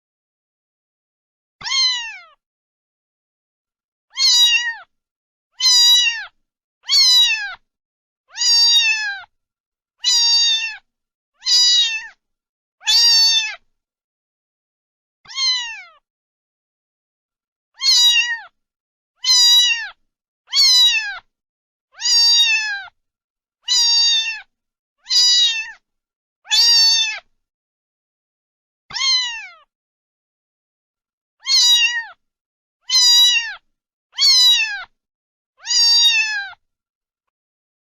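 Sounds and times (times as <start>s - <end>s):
cat meowing: 1.6s - 2.4s, 4.1s - 4.9s, 5.6s - 7.6s, 8.3s - 9.3s, 10.0s - 12.2s, 12.8s - 13.6s, 15.3s - 16.0s, 17.8s - 18.6s, 19.2s - 21.3s, 22.0s - 23.0s, 23.6s - 25.8s, 26.5s - 27.3s, 28.9s - 29.7s, 31.4s - 32.2s, 32.8s - 35.0s, 35.6s - 36.6s.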